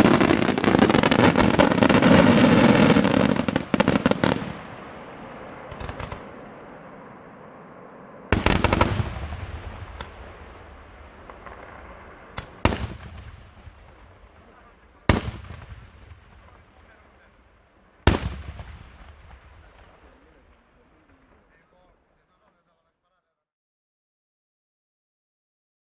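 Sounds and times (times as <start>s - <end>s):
fireworks bangs and crackling: 0.0s - 22.6s
single firework pops: 5.4s - 6.7s, 8.3s - 17.2s, 18.0s - 21.8s.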